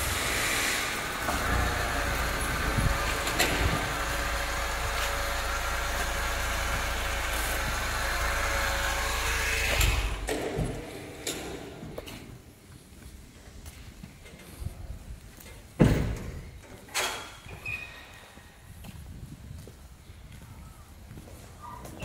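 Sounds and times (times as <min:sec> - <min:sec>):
small tiller engine running: 0:00.0 - 0:10.5.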